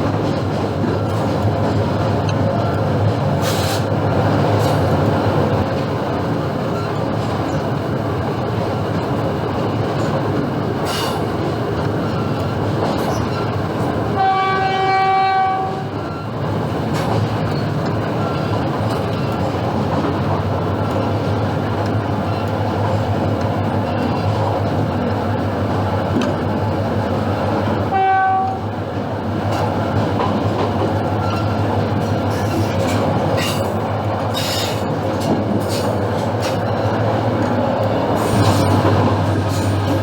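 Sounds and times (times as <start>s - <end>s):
train wheels and engine rumbling: 0.0s - 40.0s
locomotive horn blast: 14.2s - 15.9s, 27.9s - 28.6s
sharp rail clacks: 29.5s - 40.0s.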